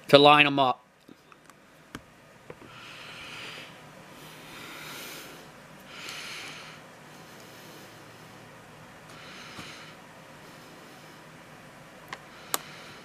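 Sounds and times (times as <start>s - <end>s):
man breathing heavily through nose: 2.6s - 11.6s, 12.2s - 13.0s.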